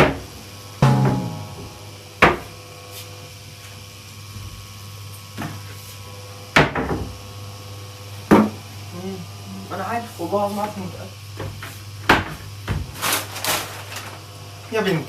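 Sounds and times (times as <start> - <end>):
steady low hum: 0.6 - 3.4
sharp knocks or bangs: 0.8 - 1.9.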